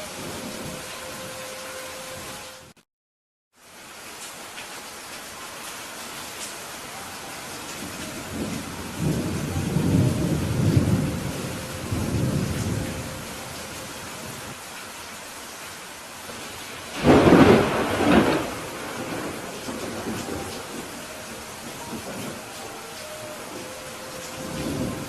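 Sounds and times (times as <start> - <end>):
steady rain: 0.0 - 2.8, 3.5 - 25.0
rolling thunder rumble: 7.5 - 14.6, 16.3 - 25.0
sharp thunderclap: 16.9 - 20.9.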